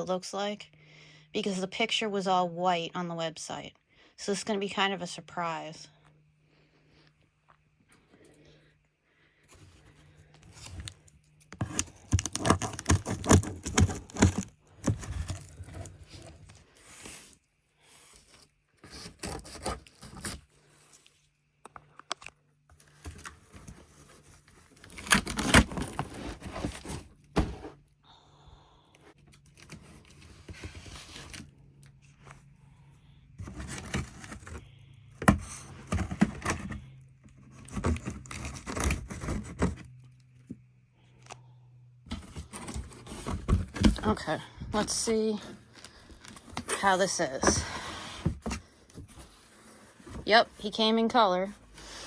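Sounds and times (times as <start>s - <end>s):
cardboard scraping and rustling: 9.5s - 21.0s, 22.7s - 27.8s, 29.5s - 32.5s, 33.4s - 40.6s, 42.1s - 52.0s
tape tearing: 11.6s - 15.9s, 24.7s - 27.0s.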